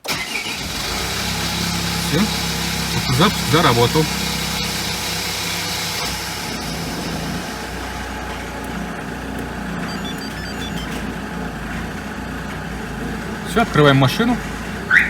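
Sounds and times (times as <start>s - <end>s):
diesel engine idling: 0.0s - 15.0s.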